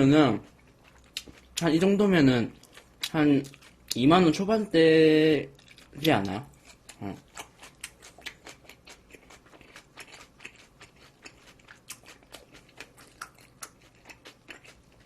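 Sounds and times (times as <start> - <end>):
person chewing food: 0.0 - 4.2, 5.5 - 15.0.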